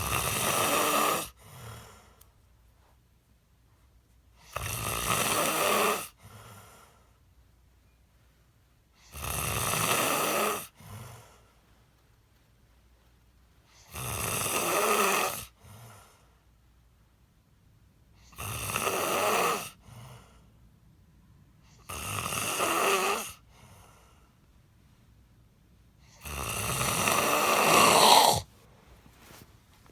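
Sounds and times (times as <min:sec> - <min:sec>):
man snoring: 0:00.0 - 0:01.8, 0:04.5 - 0:06.2, 0:09.1 - 0:11.0, 0:13.9 - 0:15.5, 0:18.3 - 0:19.8, 0:21.8 - 0:23.4, 0:26.2 - 0:28.5
faint breath: 0:01.3 - 0:03.0, 0:06.2 - 0:07.3, 0:19.8 - 0:20.8, 0:23.4 - 0:25.1.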